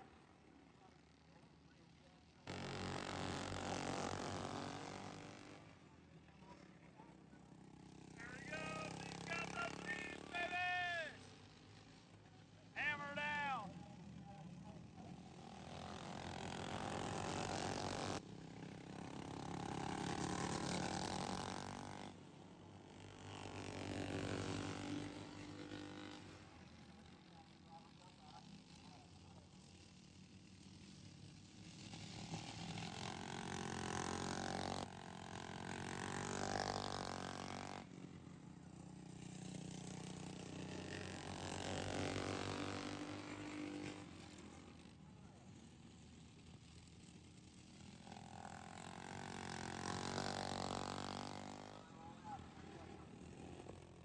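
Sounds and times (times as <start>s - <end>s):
racing lawn mower engines: 0.0s - 54.0s
lawnmower engine accelerating: 46.9s - 54.0s.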